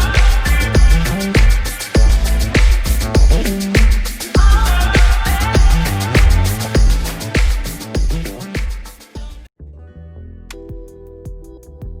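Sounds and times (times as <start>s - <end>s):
electronic hip hop music: 0.0s - 9.5s.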